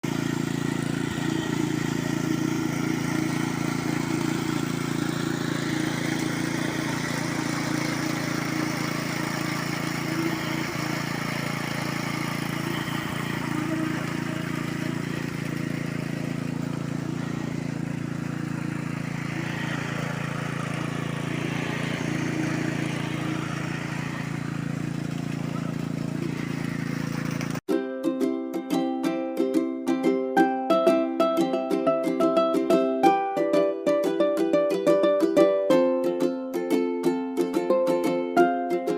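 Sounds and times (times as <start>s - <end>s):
diesel engine running: 0.0s - 27.7s.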